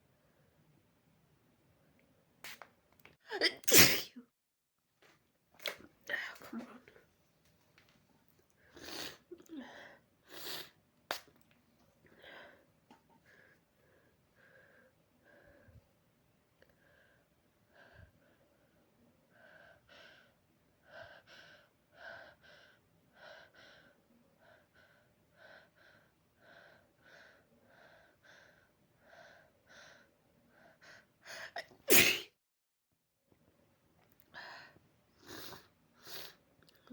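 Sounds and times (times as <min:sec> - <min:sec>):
loud sneeze: 0:03.4 - 0:04.2, 0:31.7 - 0:32.4.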